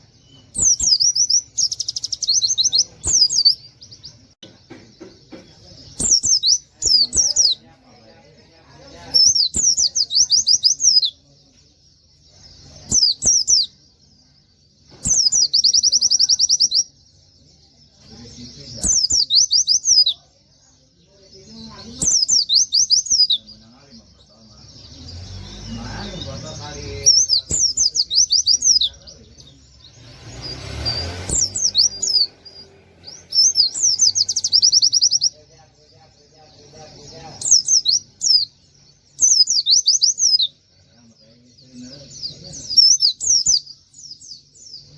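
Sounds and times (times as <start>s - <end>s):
bird singing whistled notes: 0.0s - 4.3s, 5.6s - 7.7s, 8.9s - 36.1s, 36.8s - 44.9s.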